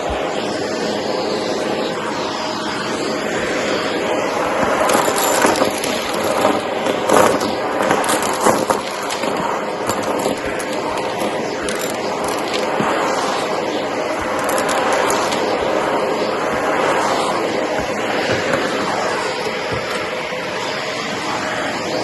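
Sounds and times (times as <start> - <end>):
vacuum cleaner running: 0.0 - 22.0
cardboard bits sucked up: 4.5 - 13.5.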